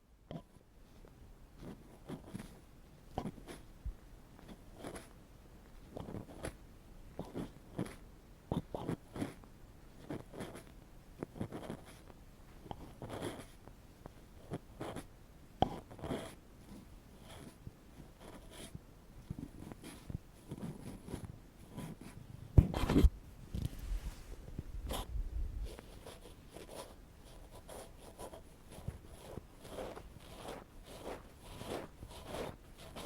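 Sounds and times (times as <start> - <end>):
ear pick scraping microphone: 22.6 - 26.2.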